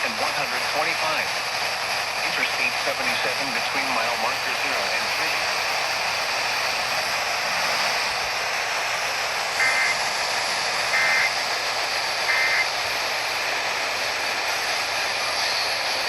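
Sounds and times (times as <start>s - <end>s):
radio static hiss: 0.0s - 16.0s
two-tone warble data tones: 9.6s - 10.0s, 10.9s - 11.4s, 12.3s - 12.7s.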